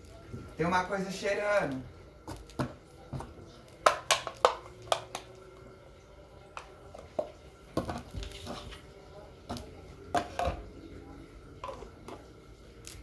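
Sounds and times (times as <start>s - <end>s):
objects clicking and knocking: 2.3s - 5.4s.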